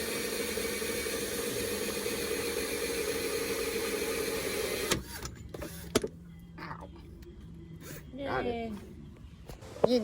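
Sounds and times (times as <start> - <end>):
power drill drilling sheet metal: 0.0 - 5.0.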